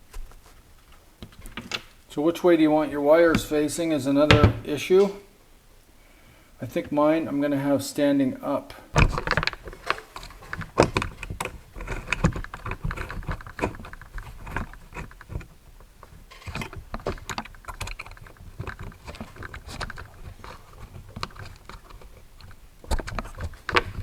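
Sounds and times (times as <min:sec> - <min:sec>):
tools and metal parts clicking: 0:09.0 - 0:24.0.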